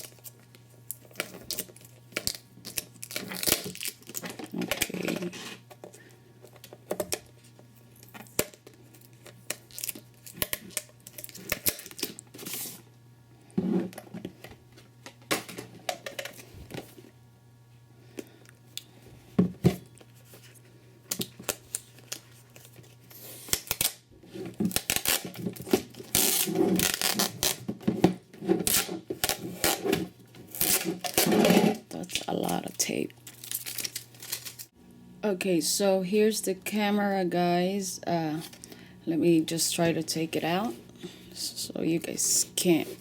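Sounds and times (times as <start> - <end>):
packing tape tearing and peeling: 0.0 - 5.6, 9.5 - 12.8, 21.1 - 24.0, 24.6 - 27.7, 28.6 - 32.5, 33.2 - 34.7
packaging clicks and rustles: 32.0 - 34.7.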